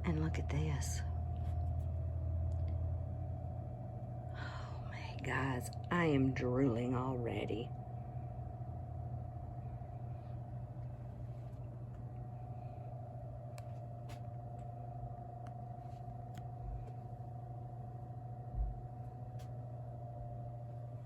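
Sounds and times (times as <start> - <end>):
faint constant tone: 0.0 - 21.0
low room hum: 0.0 - 21.0.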